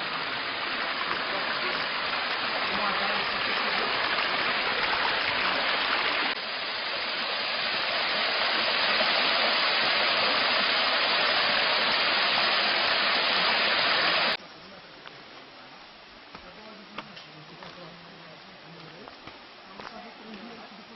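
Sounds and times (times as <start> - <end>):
water rushing over rocks: 0.0 - 14.4.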